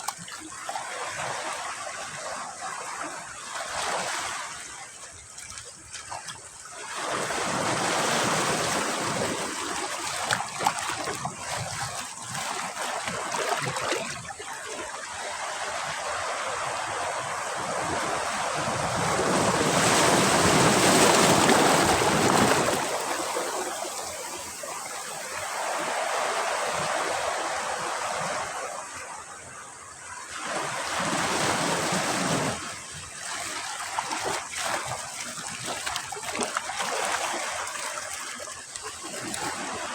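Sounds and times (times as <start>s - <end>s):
waves crashing on beach: 6.7s - 39.9s.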